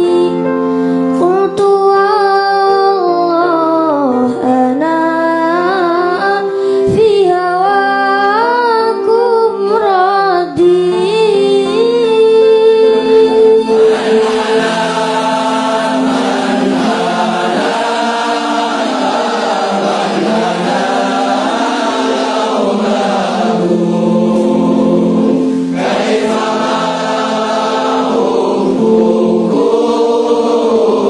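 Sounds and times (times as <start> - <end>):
choir singing: 11.7 - 31.0.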